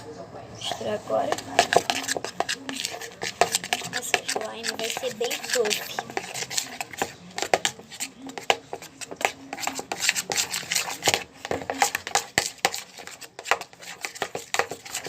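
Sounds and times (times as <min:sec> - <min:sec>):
utensil stirring slime in bowl: 0:00.6 - 0:15.0.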